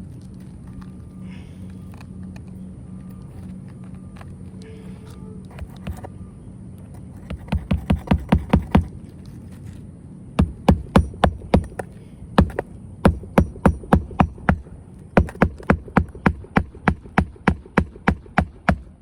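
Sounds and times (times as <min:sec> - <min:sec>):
hammer driving roofing nails: 0:07.2 - 0:08.9, 0:10.4 - 0:19.0.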